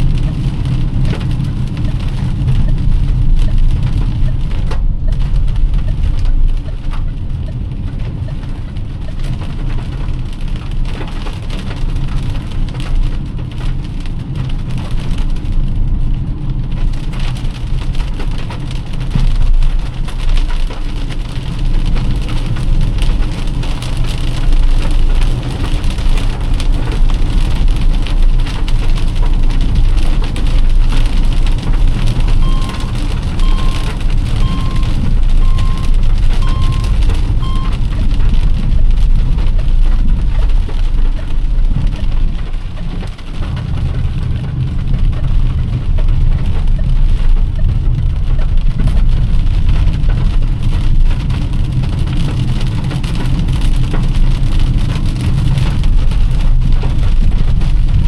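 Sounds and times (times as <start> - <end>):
heavy rain on a car: 0.0 - 58.0
road and engine rumble: 0.0 - 58.0
short beeps: 32.4 - 37.8.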